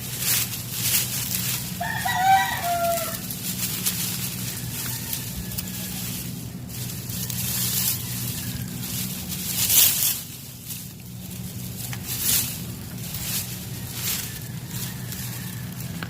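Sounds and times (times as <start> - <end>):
steady rustling: 0.0 - 16.0
rooster crowing: 1.6 - 9.2, 13.4 - 16.0.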